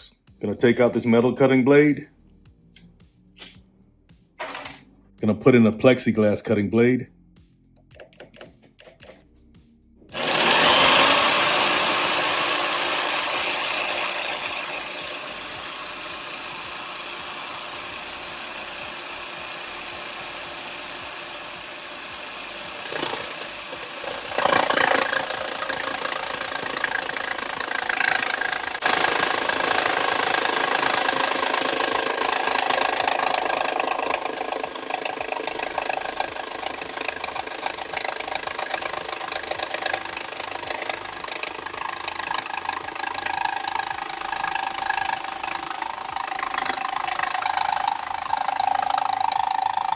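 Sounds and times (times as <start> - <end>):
jigsaw cutting plastic: 10.1 - 49.9.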